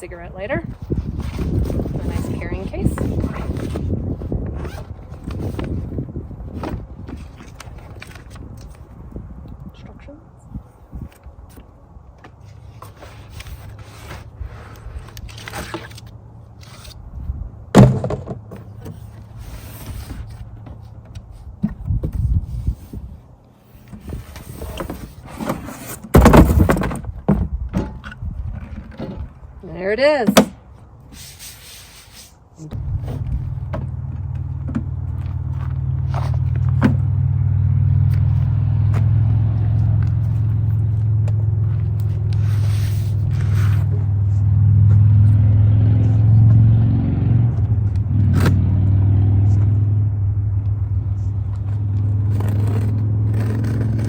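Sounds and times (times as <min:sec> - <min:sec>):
cardboard and plastic rustling: 0:00.6 - 0:09.0, 0:10.7 - 0:29.5
clicks and scrapes of handling: 0:11.0 - 0:17.0, 0:18.0 - 0:27.0, 0:39.9 - 0:44.1, 0:51.5 - 0:54.0
engine humming: 0:32.6 - 0:54.0.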